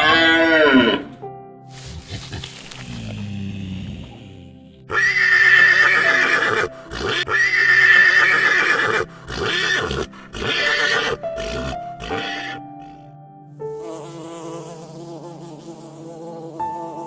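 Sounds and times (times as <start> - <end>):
horse neighing: 0.0 - 1.2, 4.9 - 12.9.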